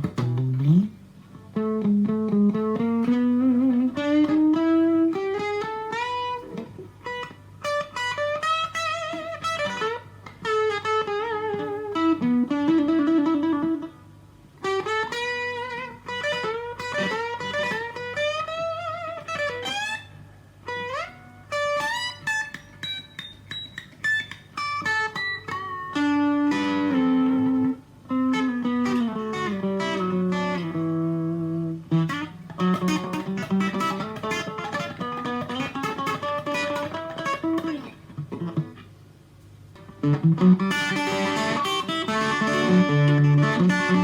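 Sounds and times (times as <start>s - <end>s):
low amp hum: 0.0s - 23.9s
electric guitar lead line: 0.0s - 39.0s, 39.7s - 44.0s.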